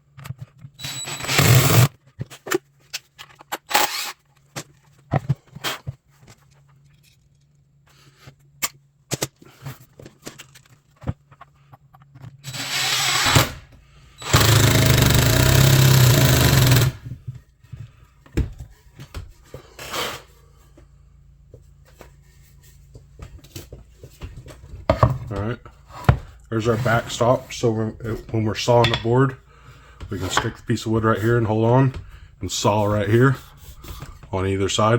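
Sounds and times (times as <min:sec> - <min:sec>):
power driver driving screws into wood: 0:00.8 - 0:02.0, 0:03.5 - 0:04.2, 0:12.4 - 0:17.1.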